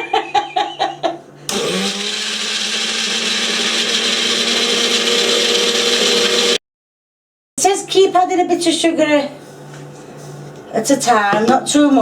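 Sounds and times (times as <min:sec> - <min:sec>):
electric blender motor: 0:01.5 - 0:06.6.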